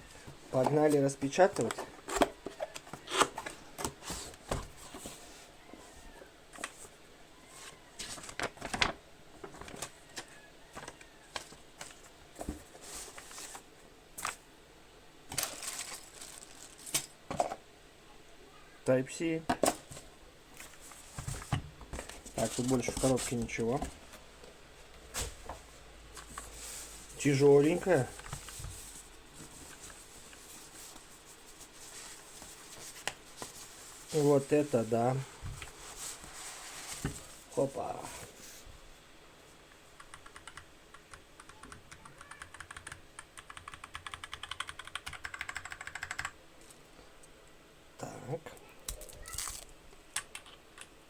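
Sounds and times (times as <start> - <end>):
keyboard handling rustle: 0.0 - 14.4, 15.3 - 17.6, 19.4 - 24.3, 25.0 - 38.6
packaging rustling: 15.3 - 17.2.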